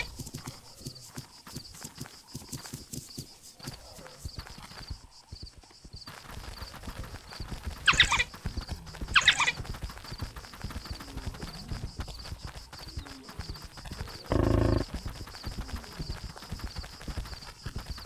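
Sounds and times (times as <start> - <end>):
wild dogs squealing: 7.9 - 8.3, 9.2 - 9.6, 14.2 - 14.8
low held animal call: 9.1 - 9.6, 14.2 - 14.9.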